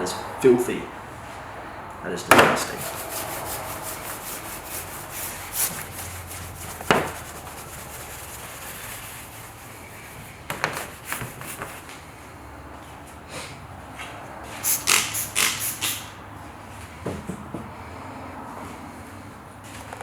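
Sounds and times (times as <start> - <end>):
rubbing on car panel: 2.7 - 12.0.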